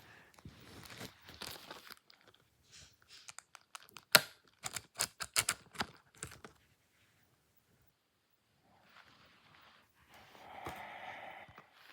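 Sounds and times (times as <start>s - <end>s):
shrink-wrap plastic tearing: 3.2s - 6.4s.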